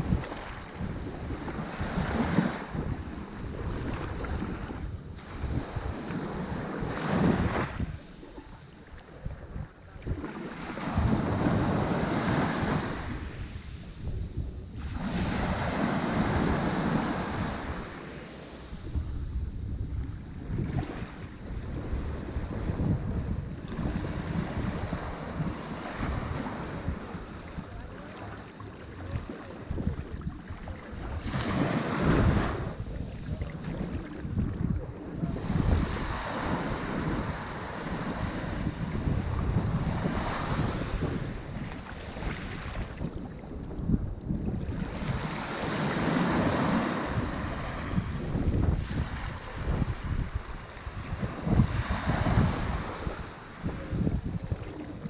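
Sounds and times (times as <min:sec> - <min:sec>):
wind on microphone: 0:00.0 - 0:55.0
ocean surf breaking: 0:10.2 - 0:19.6.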